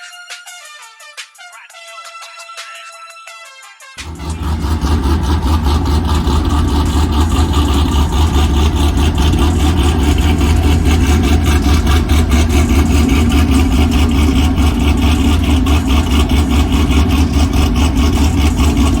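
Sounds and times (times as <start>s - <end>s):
race car engine idling: 4.0s - 19.0s.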